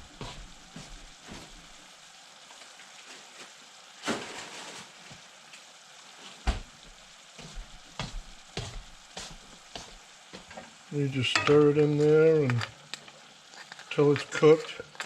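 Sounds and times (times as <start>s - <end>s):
food sizzling in a frying pan: 0.0s - 15.0s
utensil knocking against pan: 11.4s - 11.6s.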